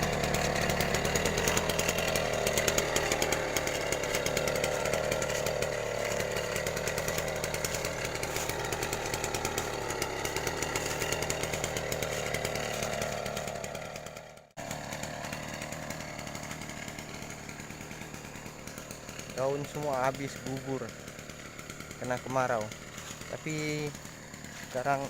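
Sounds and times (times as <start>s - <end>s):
two-stroke engine running: 0.0s - 25.0s.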